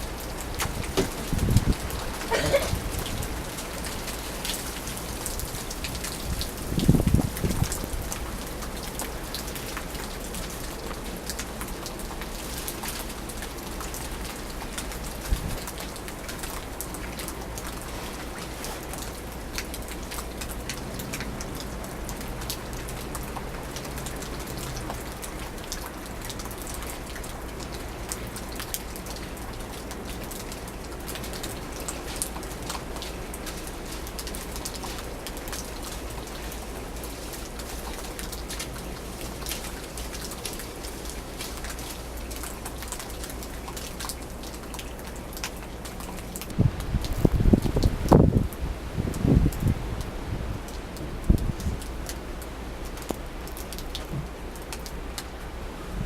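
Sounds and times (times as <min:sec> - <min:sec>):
wind gusts rushing: 0:00.6 - 0:03.5.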